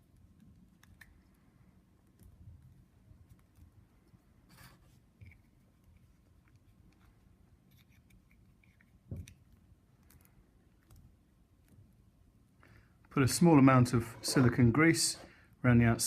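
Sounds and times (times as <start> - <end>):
rubber sleeve rubbing scrape: 4.4 - 6.3, 13.9 - 15.4.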